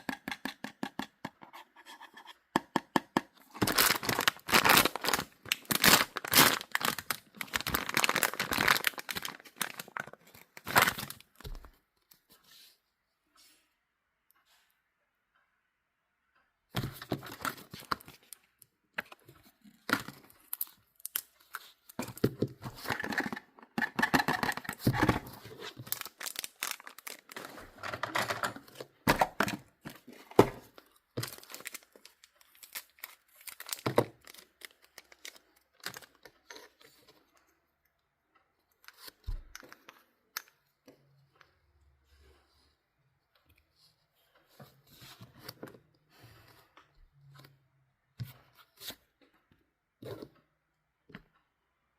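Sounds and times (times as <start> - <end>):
small handling sounds: 3.2 - 14.9, 16.4 - 51.9
packaging being torn and crinkled: 3.6 - 11.2, 19.9 - 21.6, 25.7 - 27.4, 31.2 - 36.3.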